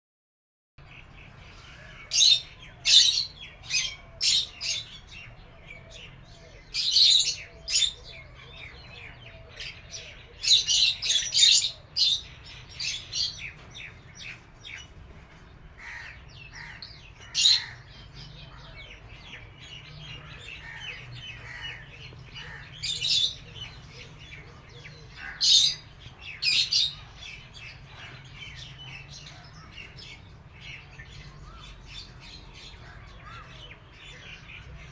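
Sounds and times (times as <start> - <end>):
quiet bird chirping: 0.8 - 34.9
lovebirds squawking: 1.5 - 5.1, 6.8 - 9.0, 15.8 - 18.0, 20.1 - 33.8.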